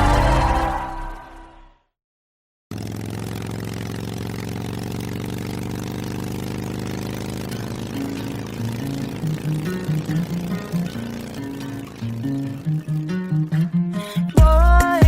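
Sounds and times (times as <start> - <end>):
song ending: 0.0 - 1.8
motorcycle engine idling: 2.7 - 13.4.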